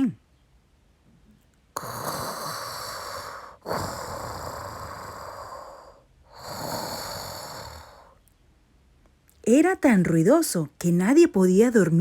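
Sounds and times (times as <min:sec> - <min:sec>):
rasping snoring: 0:01.8 - 0:08.2.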